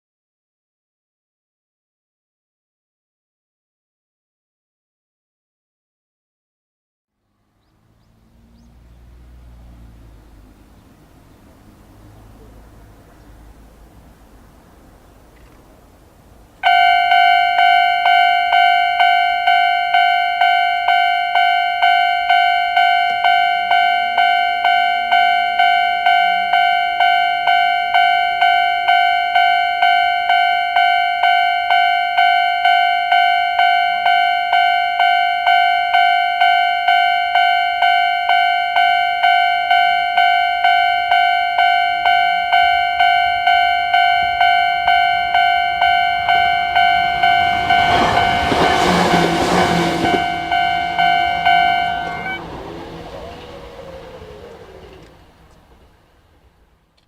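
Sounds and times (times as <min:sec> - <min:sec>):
level crossing alarm ringing: 0:16.6 - 0:55.4.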